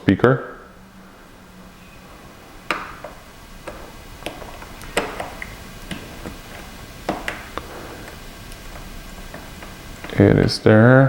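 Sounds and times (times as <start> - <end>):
small sharp clicks and taps: 2.7 - 10.2.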